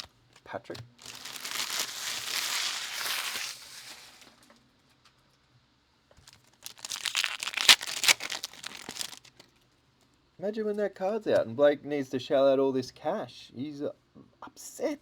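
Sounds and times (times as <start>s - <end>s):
cards rustling: 0.0s - 4.3s, 6.2s - 9.4s
wrapper crinkling and tearing: 0.0s - 4.4s, 6.2s - 9.5s.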